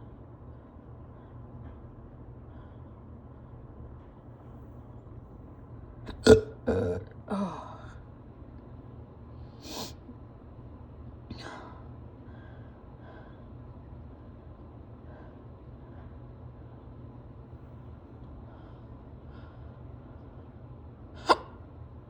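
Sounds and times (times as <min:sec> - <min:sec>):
faint breathy sounds: 0:00.0 - 0:05.0, 0:11.3 - 0:20.6
person hiccuping: 0:06.1 - 0:07.2, 0:21.2 - 0:21.6.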